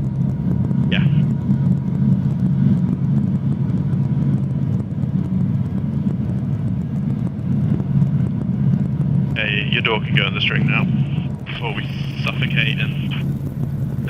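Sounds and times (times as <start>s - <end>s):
helicopter engine and rotor drone: 0.0s - 14.0s.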